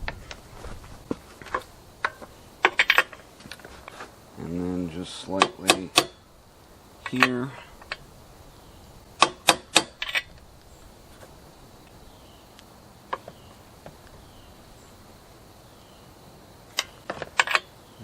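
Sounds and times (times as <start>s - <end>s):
sharp taps on metal: 5.4s - 6.2s
faint ticks: 11.8s - 14.2s.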